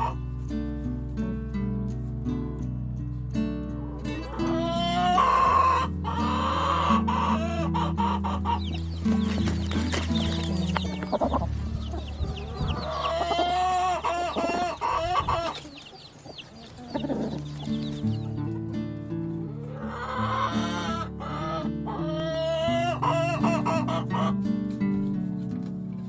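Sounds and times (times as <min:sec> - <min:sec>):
background music: 0:00.0 - 0:14.9
chickens clucking: 0:03.8 - 0:18.7, 0:19.3 - 0:24.4.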